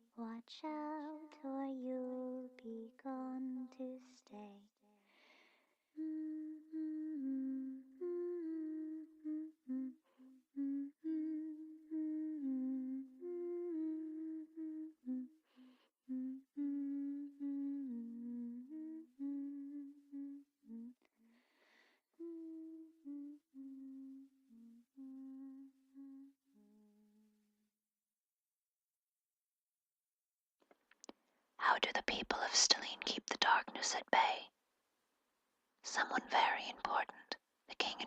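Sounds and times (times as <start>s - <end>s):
woman breathing in: 5.0s - 5.8s, 15.4s - 16.0s, 21.3s - 22.1s
woman humming a lullaby: 6.0s - 21.3s, 22.2s - 27.5s.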